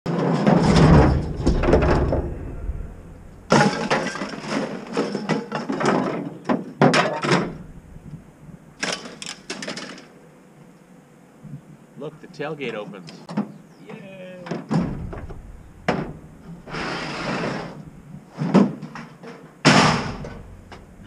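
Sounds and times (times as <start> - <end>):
things crashing and breaking: 0.1 - 6.2
sharp hits: 0.6 - 4.4, 14.8 - 16.9, 19.7 - 21.0.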